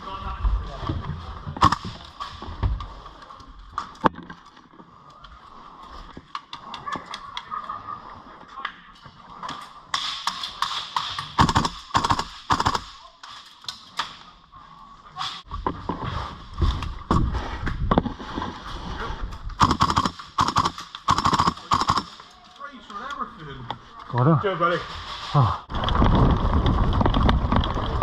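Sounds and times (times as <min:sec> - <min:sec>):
outdoor background noise: 0:00.0 - 0:28.0
airsoft rifles firing: 0:01.6 - 0:02.1, 0:10.0 - 0:13.1, 0:19.6 - 0:22.3.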